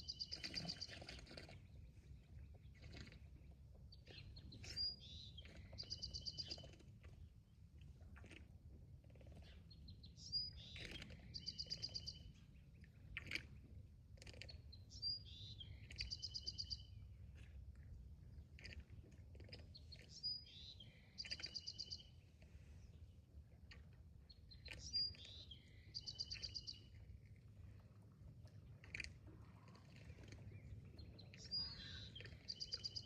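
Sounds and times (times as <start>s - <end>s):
songbird singing: 0.0s - 1.1s, 4.0s - 6.8s, 9.4s - 12.4s, 14.3s - 17.1s, 19.7s - 22.2s, 23.7s - 27.0s, 29.6s - 33.0s.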